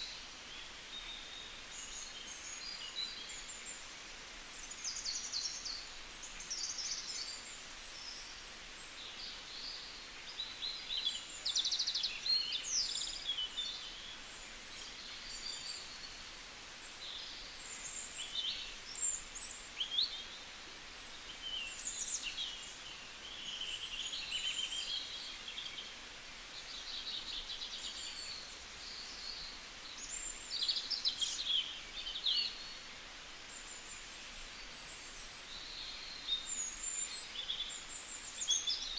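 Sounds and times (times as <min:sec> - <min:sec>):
faint steady outdoor hiss: 0:00.0 - 0:38.9
small birds chirping and trilling: 0:00.0 - 0:38.9.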